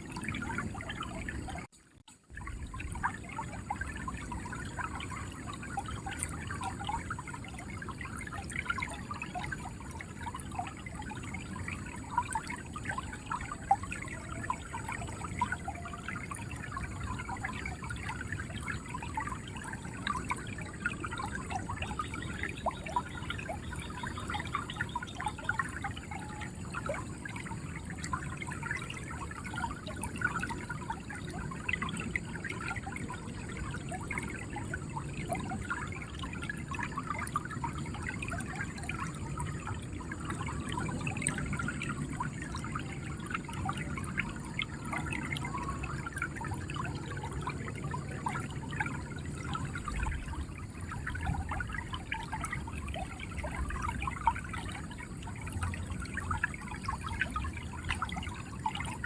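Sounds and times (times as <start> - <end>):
river water flowing: 0.0 - 59.0.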